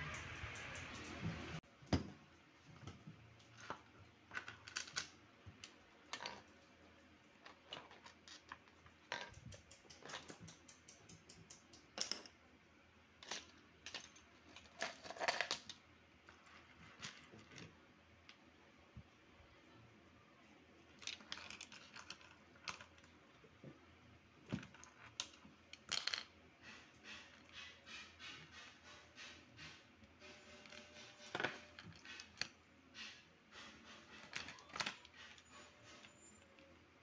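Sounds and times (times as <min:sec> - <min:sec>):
small metal tools clicking: 0:00.0 - 0:01.3, 0:07.7 - 0:12.4.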